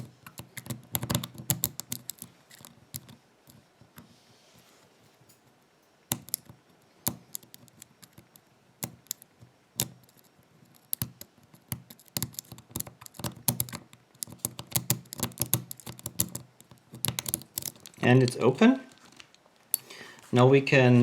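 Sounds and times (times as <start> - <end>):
lock pick clicking and scraping: 0.0 - 4.1, 6.1 - 18.4, 19.7 - 19.9.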